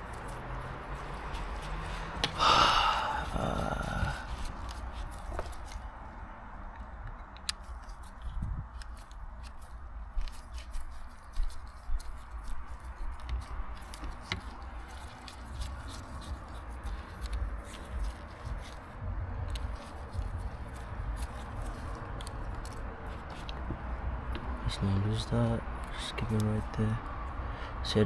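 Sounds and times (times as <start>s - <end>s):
small parts clicking and tapping: 6.7s - 24.6s.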